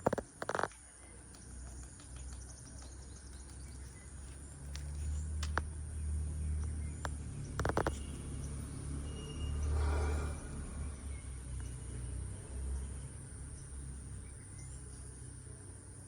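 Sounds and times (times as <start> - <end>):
sharp ticks: 1.3 - 4.0.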